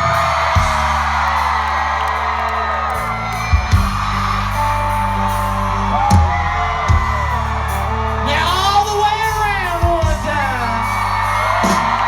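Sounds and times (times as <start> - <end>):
crowd cheering and whooping: 0.0 - 12.0
live band bass groove: 0.0 - 12.0
drum hits: 3.5 - 4.4.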